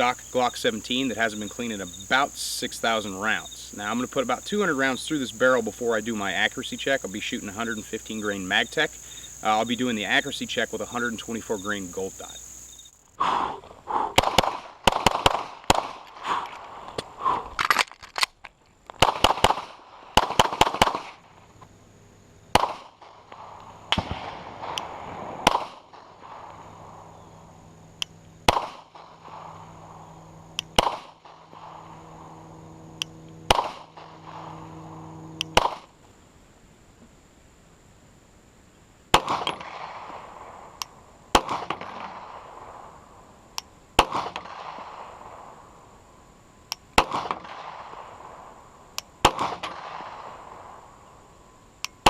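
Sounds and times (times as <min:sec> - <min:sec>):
pistol shots with echo: 0:49.2 - 0:50.3.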